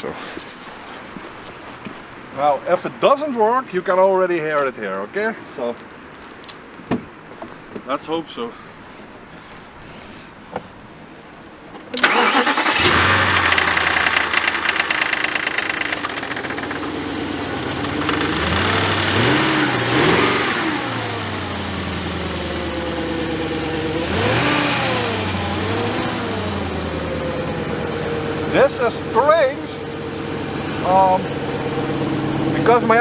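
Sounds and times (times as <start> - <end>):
car engine idling and revving: 12.0 - 33.0.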